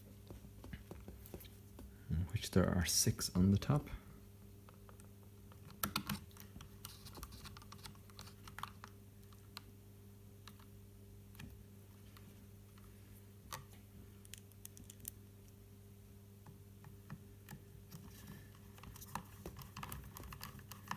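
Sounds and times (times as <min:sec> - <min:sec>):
steady low hum: 0:00.0 - 0:06.9.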